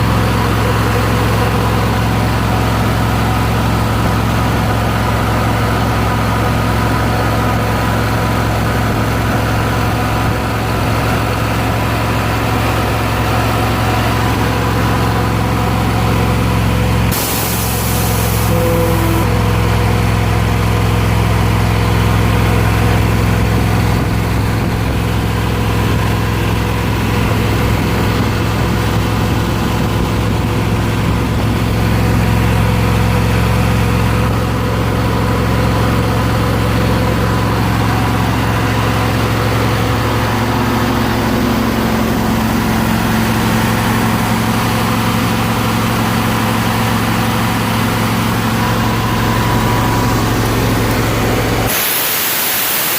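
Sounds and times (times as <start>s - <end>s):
air compressor engine running: 0.0s - 52.9s.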